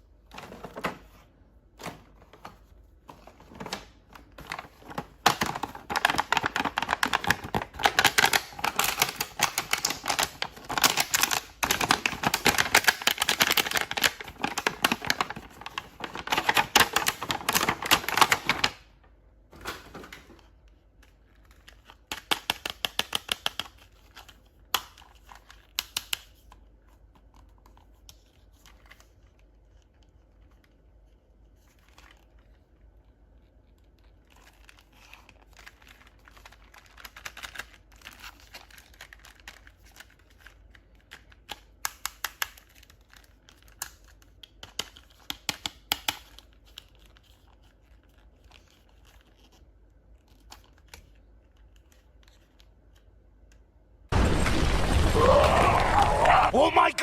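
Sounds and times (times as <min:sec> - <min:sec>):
packaging crinkling and tearing: 0:04.2 - 0:18.8, 0:33.4 - 0:45.3.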